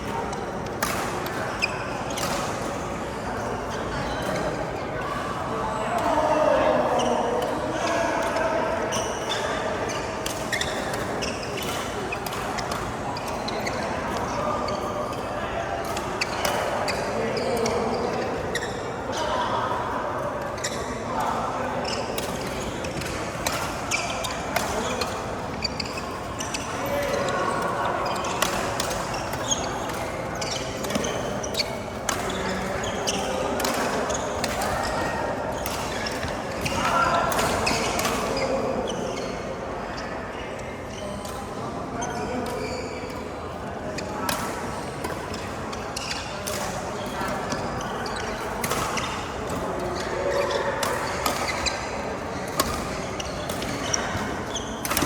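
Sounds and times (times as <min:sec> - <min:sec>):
shoes squeaking on court floor: 0:00.0 - 0:55.0
racket hitting shuttlecock: 0:00.2 - 0:02.8, 0:22.2 - 0:35.0, 0:47.6 - 0:55.0.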